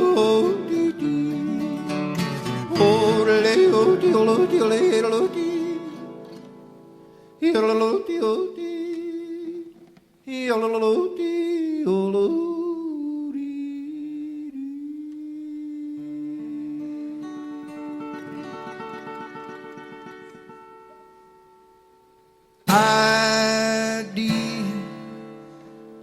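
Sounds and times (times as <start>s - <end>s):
man yodeling: 0.0s - 2.0s, 2.7s - 6.0s
acoustic guitar: 0.0s - 26.0s.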